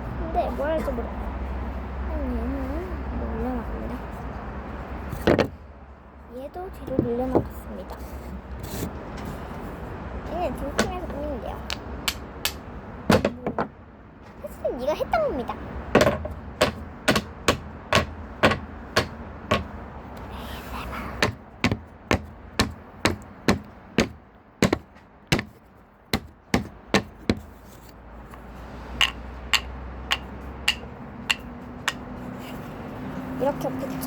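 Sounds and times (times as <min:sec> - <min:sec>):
hammer striking wood: 0:11.7 - 0:13.7, 0:16.0 - 0:19.8, 0:21.2 - 0:25.6, 0:26.2 - 0:27.5, 0:29.0 - 0:32.1.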